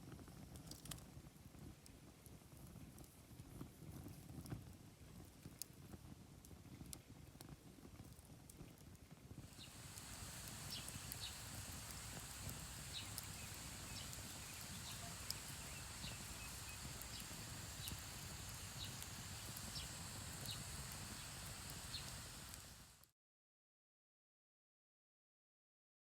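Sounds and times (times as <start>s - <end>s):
low steady rustle: 0.0s - 23.1s
campfire crackling: 0.2s - 1.1s, 8.0s - 23.1s.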